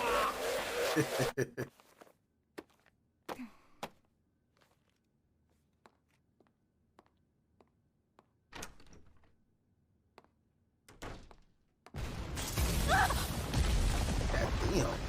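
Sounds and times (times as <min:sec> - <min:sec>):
cry: 0:00.0 - 0:01.4, 0:12.8 - 0:13.3.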